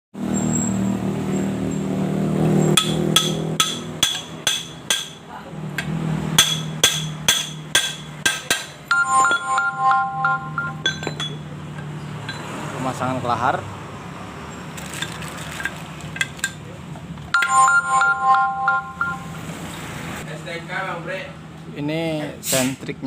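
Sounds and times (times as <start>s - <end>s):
ringing metallic clinks: 6.4s - 12.6s
short beeping tones: 8.9s - 11.5s, 17.4s - 19.5s.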